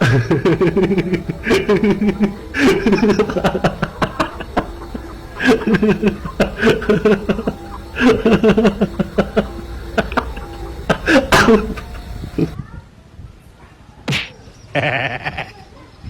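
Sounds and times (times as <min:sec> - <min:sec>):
people laughing: 0:00.0 - 0:12.6, 0:14.1 - 0:15.8.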